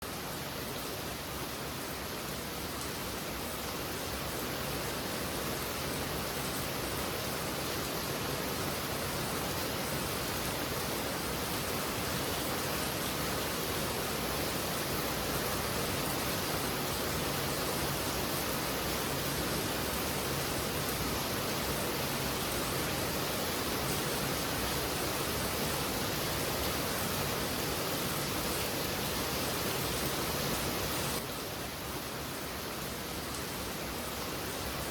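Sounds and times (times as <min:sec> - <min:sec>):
heavy rain hissing: 0:08.5 - 0:34.9.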